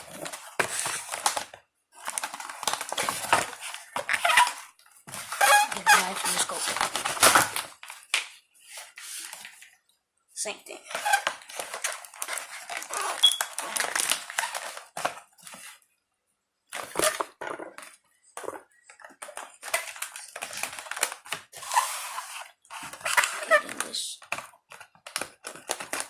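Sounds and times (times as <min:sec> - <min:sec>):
packaging crinkling and tearing: 0:00.0 - 0:08.4, 0:11.0 - 0:15.7, 0:19.2 - 0:26.0.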